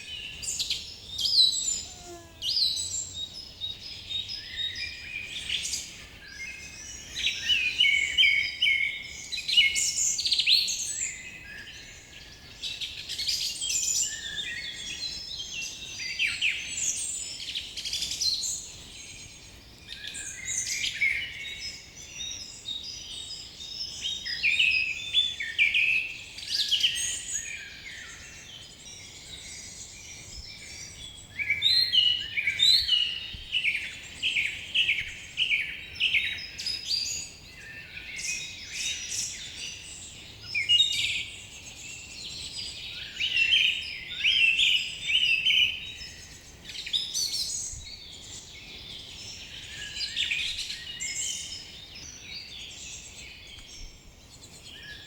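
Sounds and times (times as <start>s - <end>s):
birds singing and chirping: 0.0s - 55.0s.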